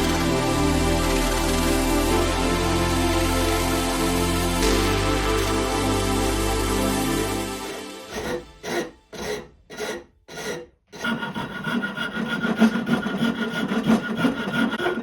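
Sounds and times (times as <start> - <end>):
saw rasp scraping wood: 7.7 - 15.0.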